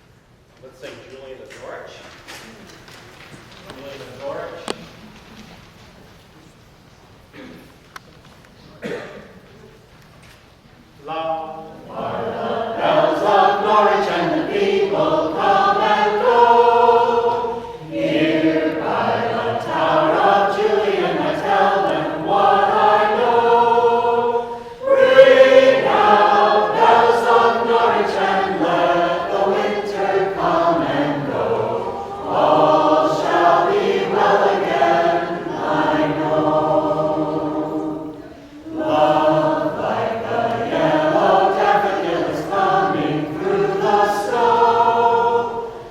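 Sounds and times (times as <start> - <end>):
choir singing: 11.5 - 45.9.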